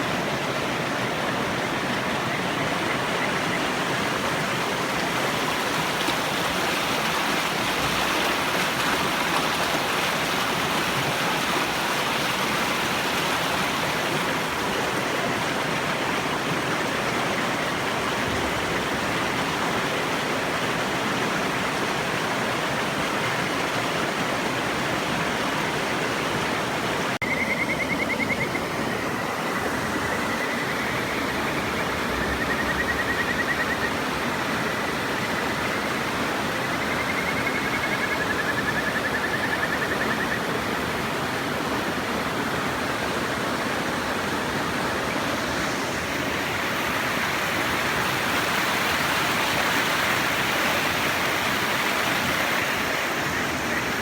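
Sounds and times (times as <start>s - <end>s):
river water rushing: 0.0s - 54.0s
frog trilled whistle: 27.2s - 28.7s, 30.0s - 34.0s.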